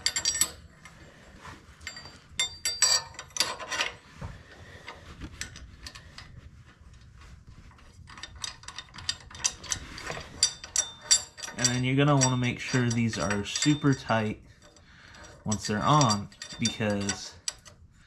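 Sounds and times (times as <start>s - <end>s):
metal tools clinking: 0.0s - 1.1s, 1.8s - 4.0s, 7.7s - 17.8s.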